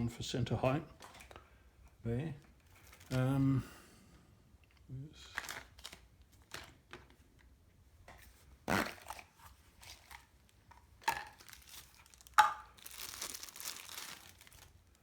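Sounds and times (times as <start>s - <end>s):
plastic wrapping crinkling: 2.6s - 3.4s, 5.3s - 6.8s, 9.0s - 15.0s.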